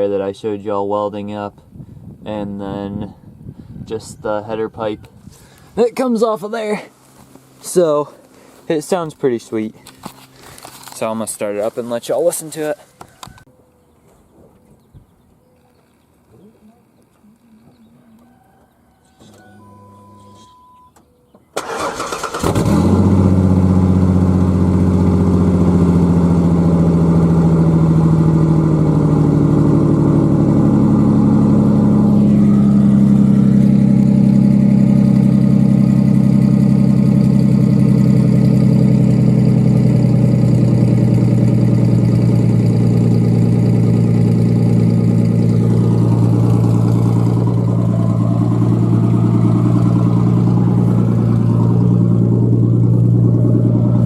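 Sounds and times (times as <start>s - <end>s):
short electronic beep: 19.3s - 21.0s
truck engine starting and idling: 21.5s - 54.0s.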